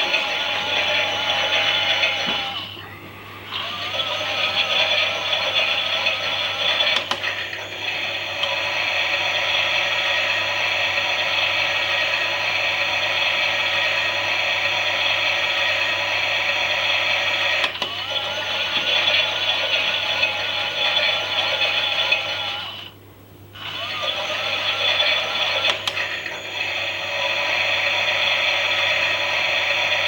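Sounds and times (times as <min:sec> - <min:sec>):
toy washing machine motor whining: 0:00.0 - 0:23.0, 0:23.6 - 0:30.0.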